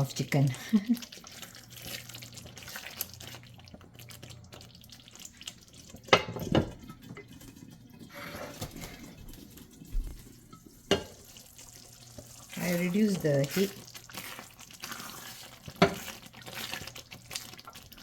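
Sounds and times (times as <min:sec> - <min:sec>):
stirring in pot: 0:00.0 - 0:18.0
spoon knocking on pot: 0:10.9 - 0:11.2.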